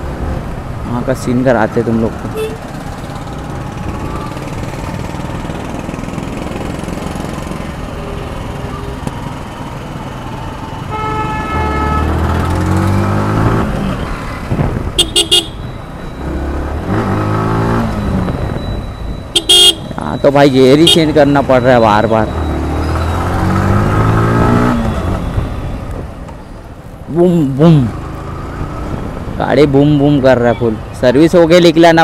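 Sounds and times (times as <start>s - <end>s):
road noise: 0.0s - 32.0s
vehicle horn toots: 2.4s - 2.6s, 10.9s - 12.2s, 15.0s - 15.7s, 19.4s - 19.9s.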